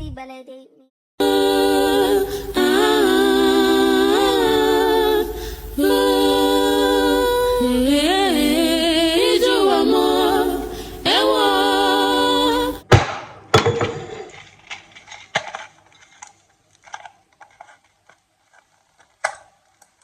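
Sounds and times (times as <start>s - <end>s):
wordless vocal harmonies: 1.2s - 12.9s.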